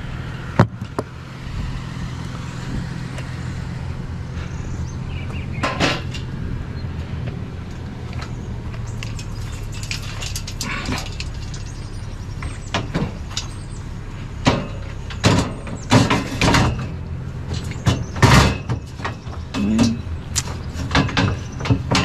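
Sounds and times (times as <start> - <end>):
vehicle engine idling: 0.0 - 22.0
scrap metal clunking: 8.2 - 22.0.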